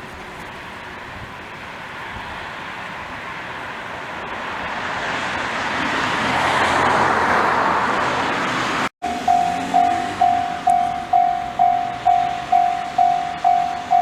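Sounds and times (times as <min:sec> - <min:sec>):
vehicle passing: 0:04.2 - 0:14.0
level crossing alarm dinging: 0:09.0 - 0:14.0.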